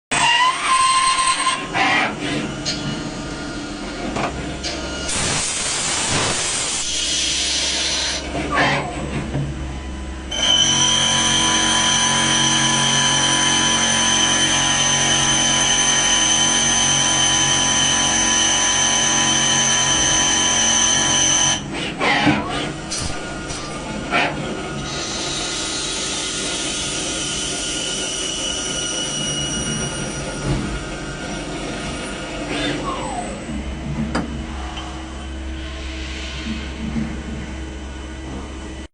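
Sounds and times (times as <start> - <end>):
cnc router cutting wood: 10.3 - 22.7.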